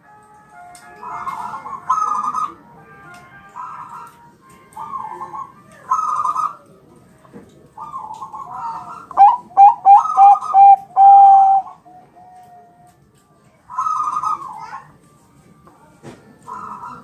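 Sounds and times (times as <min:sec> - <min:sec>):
dove cooing: 0:01.2 - 0:02.6, 0:04.8 - 0:06.6, 0:07.8 - 0:12.7, 0:13.7 - 0:14.8.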